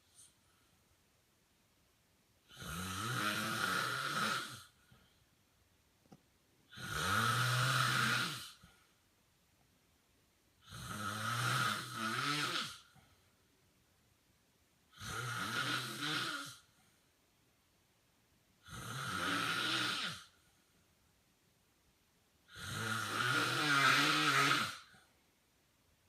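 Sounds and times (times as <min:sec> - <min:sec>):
man snoring: 0:02.5 - 0:04.8, 0:06.7 - 0:08.7, 0:10.6 - 0:13.0, 0:14.9 - 0:16.7, 0:18.6 - 0:20.4, 0:22.5 - 0:25.0.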